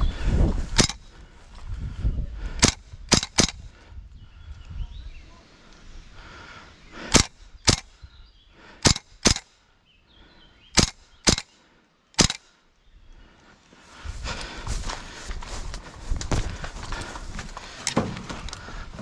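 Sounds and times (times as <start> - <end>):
airsoft gun shots: 0.8 - 1.0, 2.6 - 3.6, 7.1 - 7.9, 8.8 - 9.5, 10.8 - 11.5, 12.2 - 12.4.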